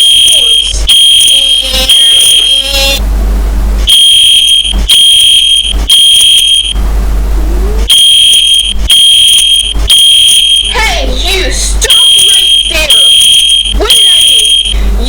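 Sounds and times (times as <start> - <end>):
fire alarm beeping: 0.0 - 3.0, 3.9 - 6.8, 7.9 - 10.8, 11.8 - 14.8.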